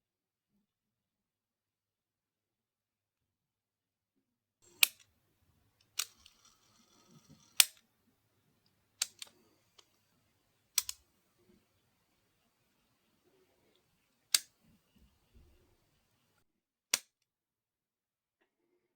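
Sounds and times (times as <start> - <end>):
faint ticks and rattles: 4.6 - 16.4
plastic clicks and snaps: 8.6 - 10.1, 10.7 - 11.6, 13.6 - 14.8.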